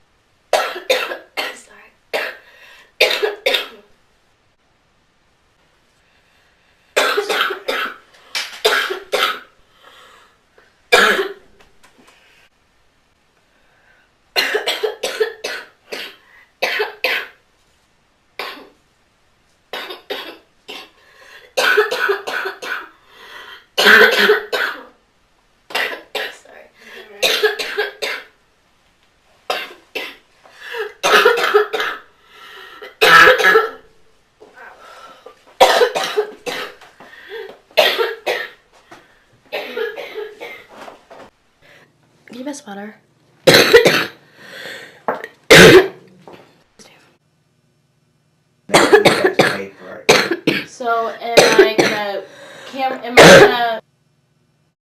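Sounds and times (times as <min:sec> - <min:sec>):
girl coughing: 0:00.6 - 0:02.4, 0:03.0 - 0:03.9, 0:07.0 - 0:08.0, 0:08.6 - 0:09.5, 0:11.0 - 0:11.4, 0:14.4 - 0:17.4, 0:18.4 - 0:18.7, 0:19.8 - 0:21.0, 0:21.6 - 0:22.9, 0:23.8 - 0:24.9, 0:25.8 - 0:26.4, 0:27.0 - 0:28.3, 0:29.5 - 0:32.1, 0:32.8 - 0:33.9, 0:35.6 - 0:38.6, 0:39.5 - 0:40.7, 0:43.5 - 0:44.2, 0:45.5 - 0:46.0, 0:48.7 - 0:52.2, 0:52.8 - 0:53.8.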